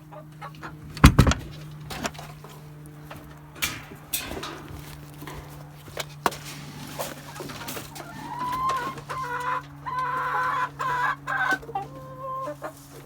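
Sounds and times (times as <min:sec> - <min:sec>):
chickens clucking: 0:00.0 - 0:13.0
sharp knocks and clicks: 0:00.9 - 0:02.2.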